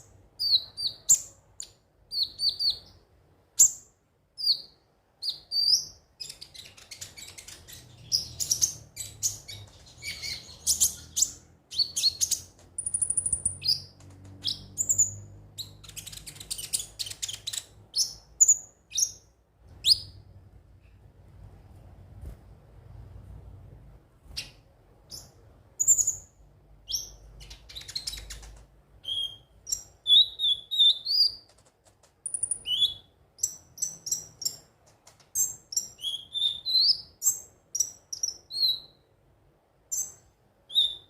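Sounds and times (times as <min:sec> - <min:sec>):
thin steady bird whistle: 0:00.0 - 0:03.0, 0:03.6 - 0:20.2, 0:29.0 - 0:31.5, 0:32.3 - 0:34.7, 0:35.4 - 0:39.1, 0:39.9 - 0:41.0
bird chirping and trilling: 0:00.4 - 0:03.0, 0:03.6 - 0:20.2, 0:24.3 - 0:31.5, 0:32.2 - 0:34.7, 0:35.4 - 0:39.1, 0:39.9 - 0:41.0.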